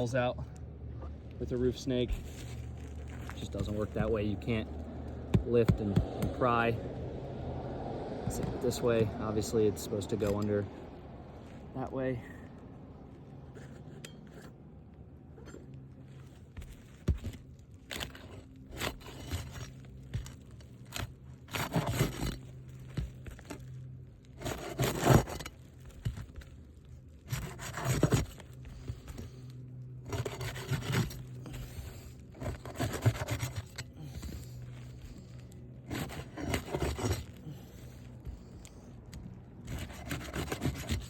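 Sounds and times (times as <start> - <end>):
metal tool scraping shingles: 2.0 - 4.6, 16.6 - 38.8, 39.6 - 41.0.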